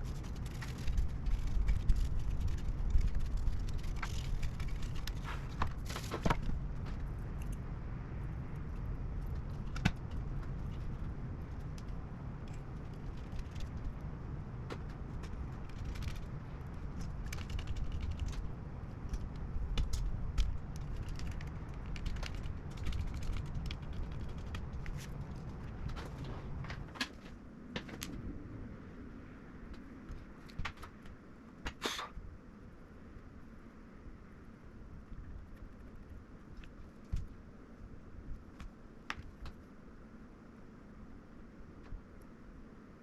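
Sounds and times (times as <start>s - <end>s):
small clicks and rattles of hard objects: 0.0s - 7.6s, 8.6s - 28.2s
low steady rumble: 0.0s - 43.0s.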